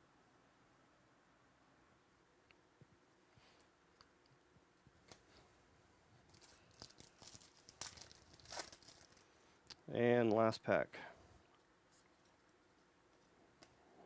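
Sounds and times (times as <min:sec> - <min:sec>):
cards being handled: 0:06.3 - 0:09.3
wrapper crinkling and tearing: 0:06.3 - 0:09.3.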